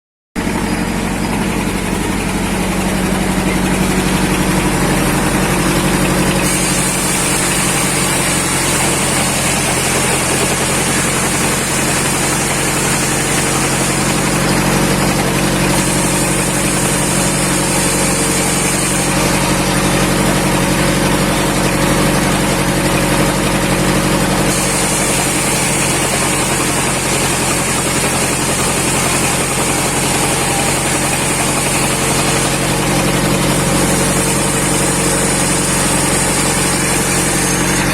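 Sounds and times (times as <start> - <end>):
bandsaw hum: 0.4 - 37.9
bandsaw cutting hiss: 3.0 - 21.8, 24.3 - 37.9.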